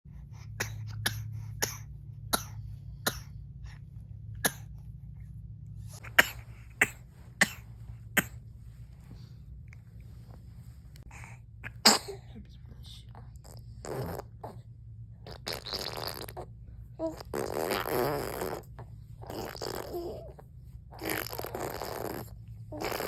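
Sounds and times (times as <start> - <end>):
low steady hum: 0.1 - 23.0
baby girl fake-coughing: 0.6 - 3.4, 4.4 - 4.7, 6.0 - 8.4, 11.6 - 12.2.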